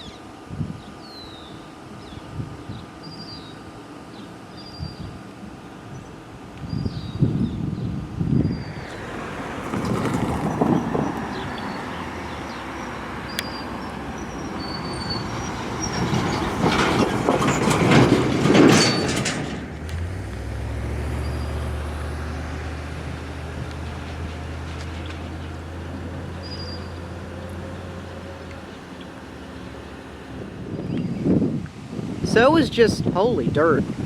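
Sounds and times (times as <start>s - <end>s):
wheel squeals: 8.4s - 19.6s, 23.9s - 31.2s
train wheels rumbling on rails: 8.5s - 30.6s.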